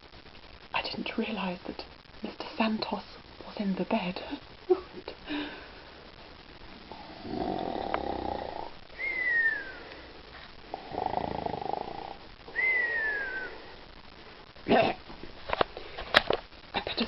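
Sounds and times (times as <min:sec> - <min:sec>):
person snoring with whistle: 0:06.9 - 0:10.0, 0:10.7 - 0:13.6.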